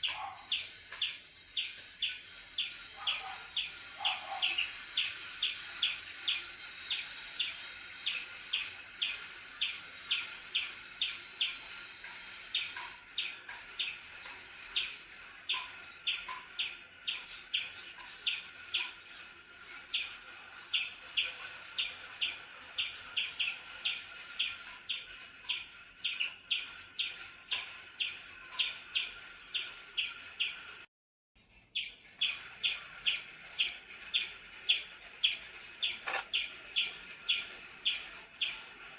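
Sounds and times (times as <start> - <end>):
animal chirping call: 0.0 - 11.8, 19.8 - 30.6, 31.8 - 38.7.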